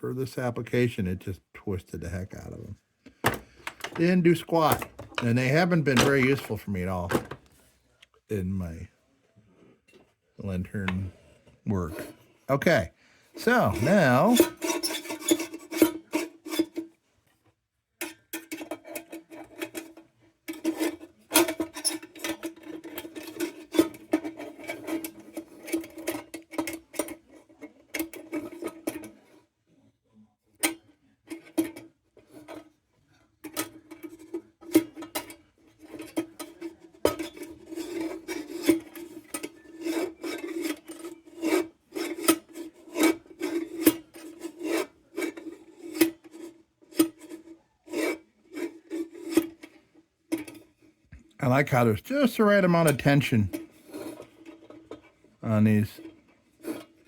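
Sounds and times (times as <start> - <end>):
hand tool rasping on metal: 13.4 - 16.8, 37.2 - 49.6.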